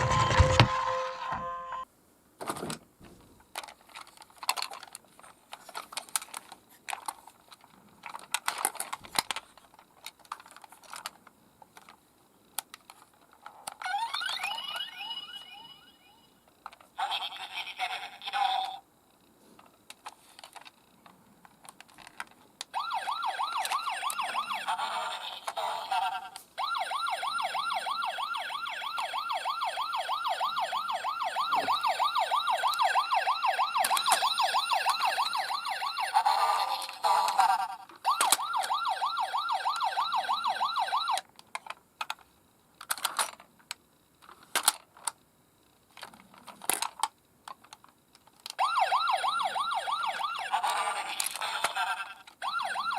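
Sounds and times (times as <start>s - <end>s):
toy electronic siren wailing: 13.8s - 16.3s, 22.7s - 41.2s, 48.6s - 52.9s.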